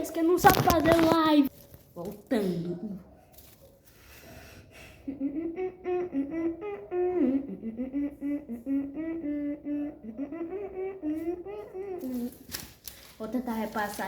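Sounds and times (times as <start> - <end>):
person humming a tune: 5.0 - 12.5.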